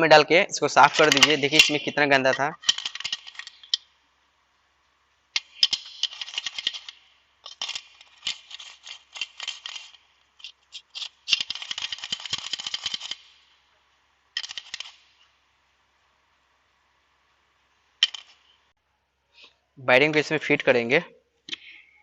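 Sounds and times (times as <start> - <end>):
ball bearings rattling on metal: 0.8 - 3.9, 5.4 - 13.5, 14.4 - 15.1, 18.0 - 18.4.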